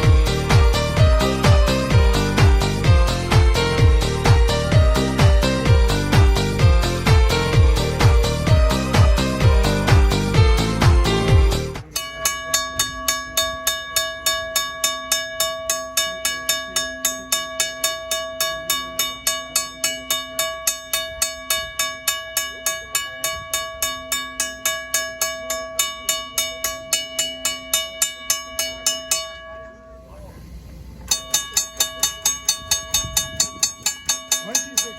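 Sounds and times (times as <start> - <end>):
railroad crossing bell ringing: 11.8 - 30.2, 31.1 - 34.9.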